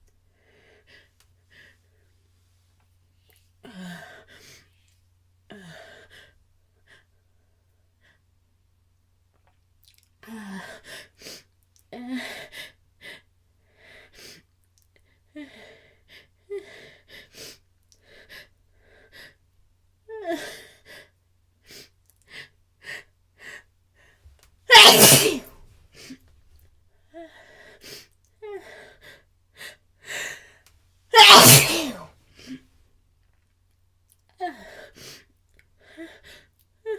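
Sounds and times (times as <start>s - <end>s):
person gasping before sneezing: 24.7s - 25.5s, 31.2s - 32.0s
person sneezing loudly: 24.7s - 25.5s, 31.2s - 32.1s.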